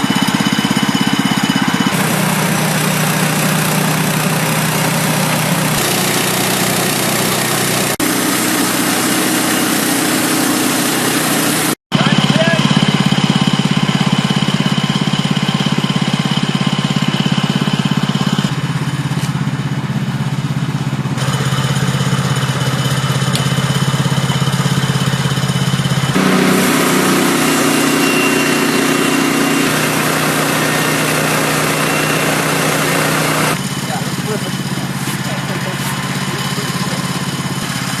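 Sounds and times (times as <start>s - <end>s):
small gasoline engine running: 0.0s - 38.0s.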